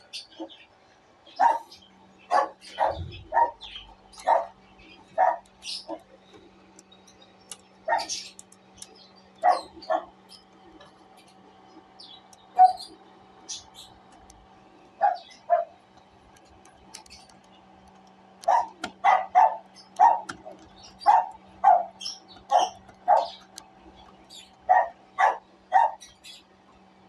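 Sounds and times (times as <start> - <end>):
dog barking: 1.4 - 1.7, 2.3 - 4.6, 5.2 - 6.0, 7.9 - 8.1, 9.4 - 10.1, 15.0 - 15.8, 18.4 - 20.4, 21.0 - 23.4, 24.7 - 26.0.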